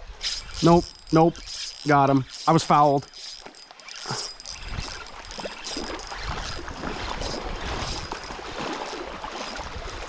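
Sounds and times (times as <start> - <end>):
creek water splashing: 0.0 - 10.0
wind rumbling on microphone: 4.4 - 10.0.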